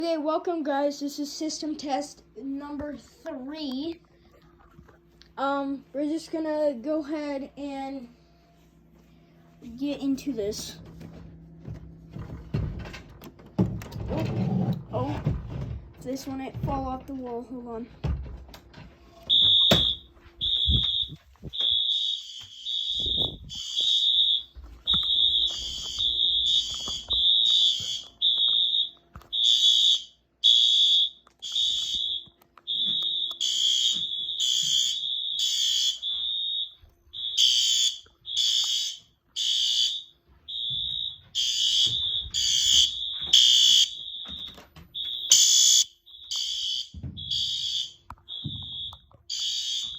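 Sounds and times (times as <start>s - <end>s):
fire alarms beeping: 19.1s - 49.9s
harsher alarm beep: 19.3s - 49.9s.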